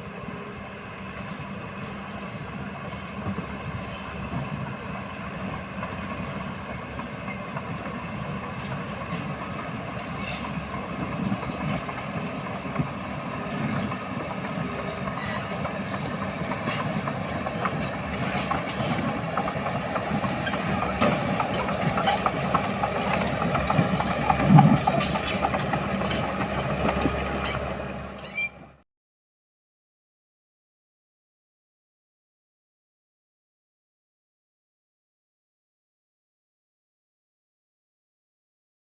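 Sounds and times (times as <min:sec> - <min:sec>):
high-pitched squeal: 0:00.0 - 0:06.6, 0:07.2 - 0:16.1, 0:16.7 - 0:28.8
diesel engine running under load: 0:05.7 - 0:28.6.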